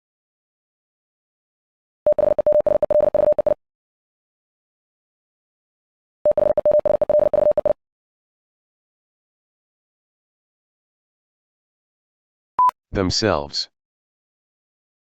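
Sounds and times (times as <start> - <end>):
morse code tone: 2.1 - 3.6.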